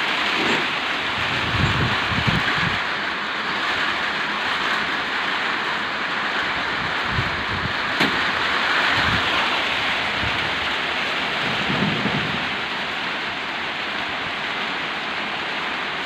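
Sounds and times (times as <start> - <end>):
heavy rain pouring: 0.0 - 16.0
strong wind: 0.0 - 16.0
low rumbles: 0.9 - 2.9, 6.5 - 14.5.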